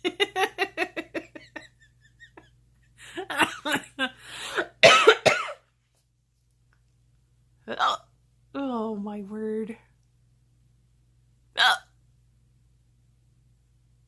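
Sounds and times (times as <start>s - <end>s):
woman coughing and laughing: 3.2s - 4.0s, 4.6s - 5.6s
woman hiccuping: 11.6s - 11.9s.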